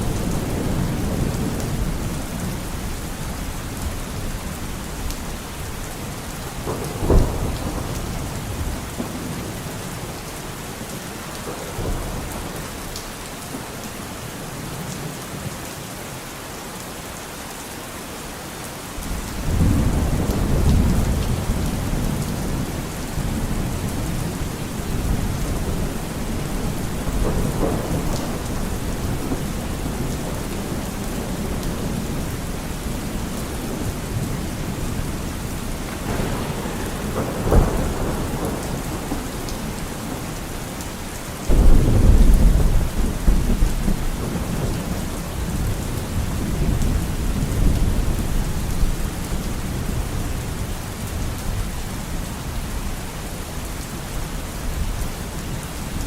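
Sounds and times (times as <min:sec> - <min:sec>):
low thunder rumble: 0:00.0 - 0:10.1, 0:19.0 - 0:50.3
rain falling: 0:00.0 - 0:56.0
thunder clap: 0:06.5 - 0:10.0, 0:19.4 - 0:48.4.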